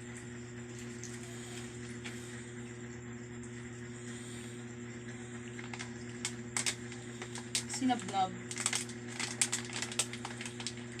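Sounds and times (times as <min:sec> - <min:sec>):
low mechanical hum with whine: 0:00.0 - 0:11.0.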